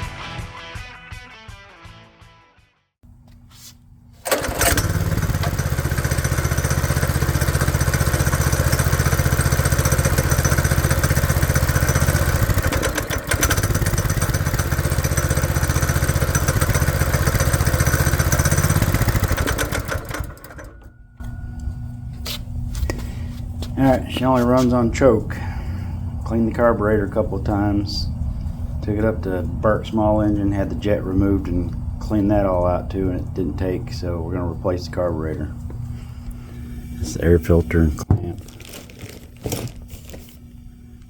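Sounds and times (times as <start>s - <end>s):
small engine running: 4.2s - 22.0s.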